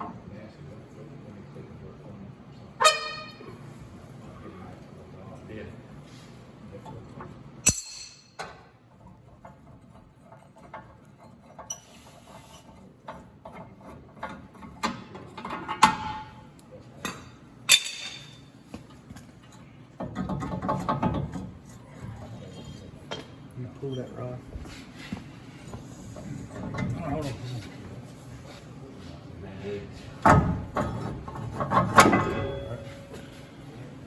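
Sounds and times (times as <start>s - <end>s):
sharp metal knocks: 7.7s - 8.6s.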